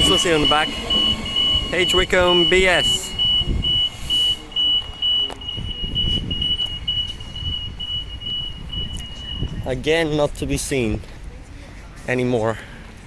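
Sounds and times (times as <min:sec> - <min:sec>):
crossing warning beeping: 0:00.0 - 0:10.3
low train rumble: 0:00.0 - 0:13.0.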